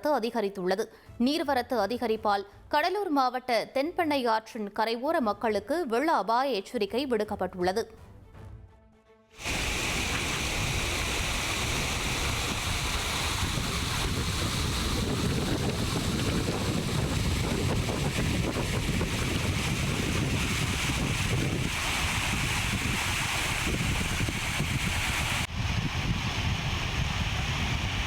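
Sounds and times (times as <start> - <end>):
river floodwater rushing: 9.4 - 25.5.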